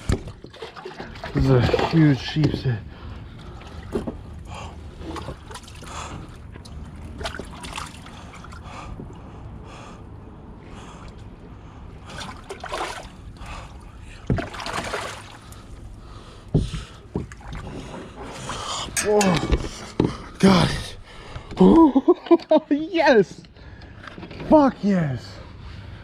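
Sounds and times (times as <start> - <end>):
water splashing and sloshing: 0.0 - 22.4.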